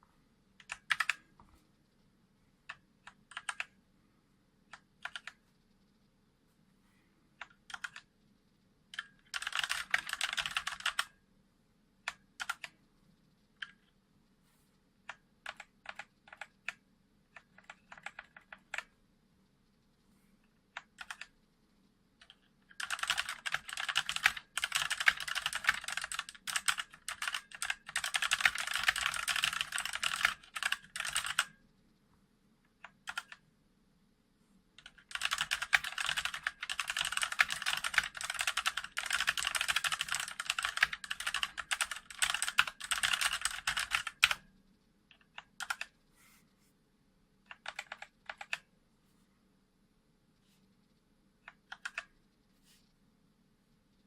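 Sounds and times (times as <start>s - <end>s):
fast typing on mechanical keyboard: 0.6s - 1.2s, 2.7s - 3.7s, 5.0s - 5.4s, 7.4s - 8.1s, 9.0s - 11.2s, 12.1s - 12.7s, 15.1s - 18.9s, 20.8s - 21.3s, 22.2s - 31.6s, 32.8s - 33.4s, 34.8s - 44.5s, 45.1s - 46.0s, 47.5s - 48.6s, 51.5s - 52.1s.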